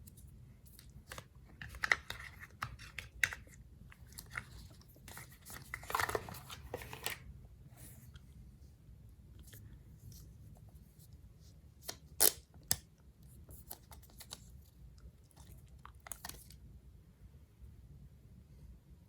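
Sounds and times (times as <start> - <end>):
paper and plastic rustling: 0.1 - 8.1.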